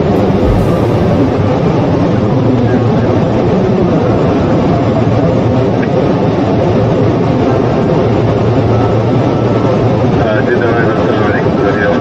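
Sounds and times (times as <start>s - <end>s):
cockpit airflow and engine noise: 0.0s - 4.4s.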